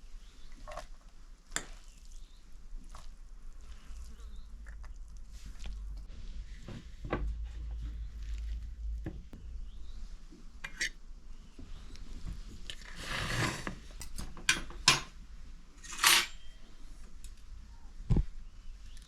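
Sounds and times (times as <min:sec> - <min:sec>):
dishes and cutlery clinking: 0:14.0 - 0:15.1, 0:15.8 - 0:16.7
dishes scraping: 0:15.8 - 0:16.6.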